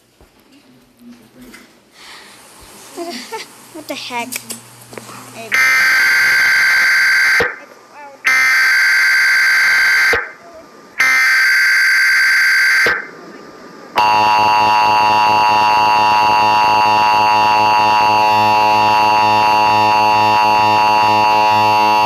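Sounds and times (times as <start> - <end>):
buzzing data header burst: 5.4 - 10.4, 11.0 - 13.1, 13.9 - 22.0
two-tone attention signal: 5.6 - 7.6.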